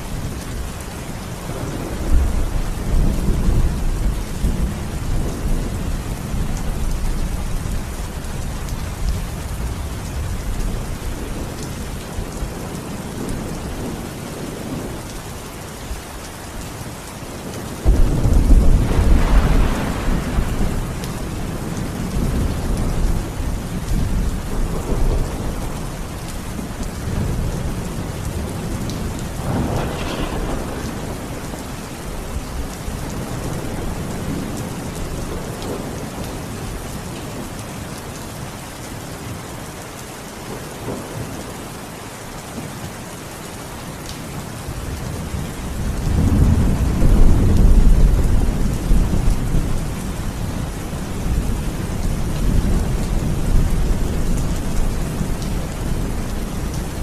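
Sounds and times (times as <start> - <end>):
steady rain: 0.0 - 57.0
thunder rumbling: 1.3 - 8.2, 17.8 - 36.6, 44.8 - 57.0
thunder crack: 17.8 - 21.0, 29.4 - 31.7.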